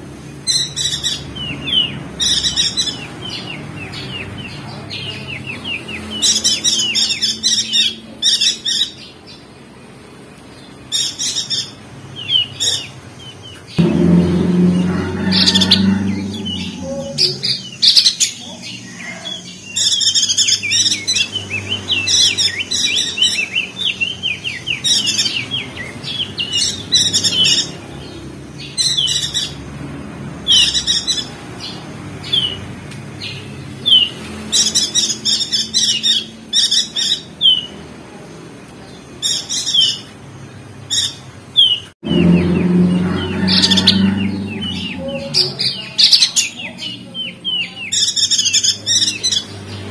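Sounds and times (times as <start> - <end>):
songbird twittering chirps: 0.1 - 29.7.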